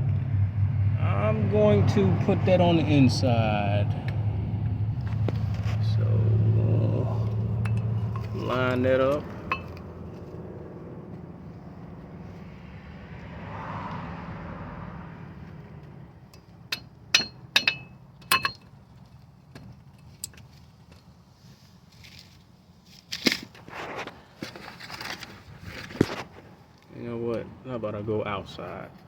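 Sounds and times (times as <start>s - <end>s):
steady low hum: 0.0s - 13.1s
metal scraping: 2.5s - 11.7s
metal clinks and clicks: 7.3s - 9.9s, 16.3s - 18.8s.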